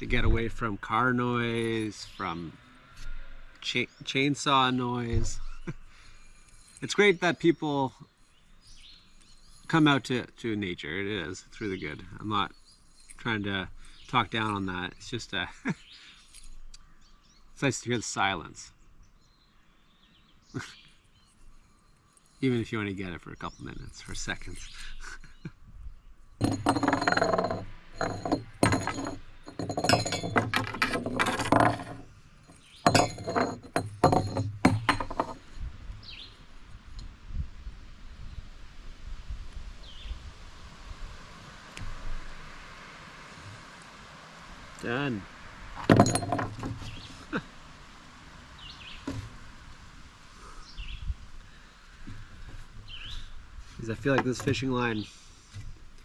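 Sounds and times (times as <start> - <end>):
small bird chirping: 5.4 - 9.7, 11.7 - 14.3
sharp knocks and clatter: 26.4 - 35.6, 45.8 - 47.1, 49.0 - 49.4, 54.0 - 54.7
small hard objects clinking: 26.4 - 35.6, 45.9 - 47.0.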